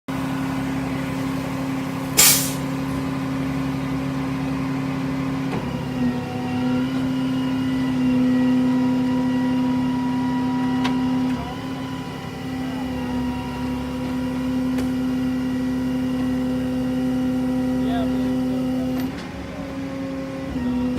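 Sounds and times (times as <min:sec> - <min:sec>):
truck engine idling: 0:00.2 - 0:08.0
loud hissing burst: 0:02.2 - 0:02.7.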